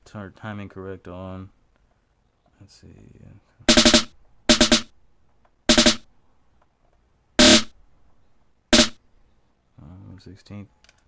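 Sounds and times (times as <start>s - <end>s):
rapid snare drum rolls: 3.7s - 4.9s, 5.7s - 6.0s, 7.4s - 7.7s, 8.8s - 9.0s.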